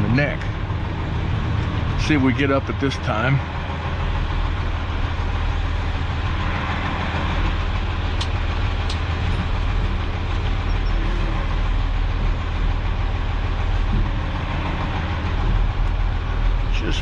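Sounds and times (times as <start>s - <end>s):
heavy truck engine under load: 0.0s - 17.0s.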